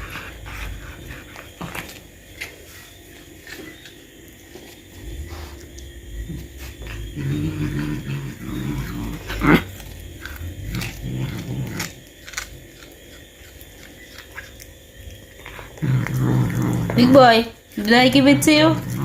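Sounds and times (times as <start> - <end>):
cat growling low: 0.0 - 1.8, 5.0 - 12.9, 15.4 - 17.5, 18.2 - 19.0
teeth clicking on bone: 5.5 - 19.0
bone cracking: 8.5 - 17.0.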